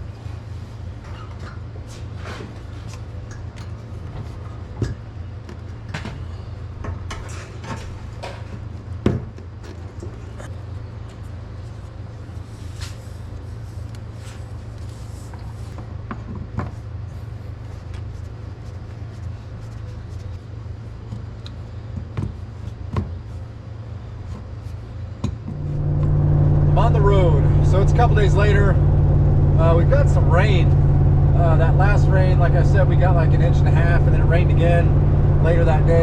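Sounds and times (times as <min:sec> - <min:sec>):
low engine drone: 0:25.4 - 0:36.0.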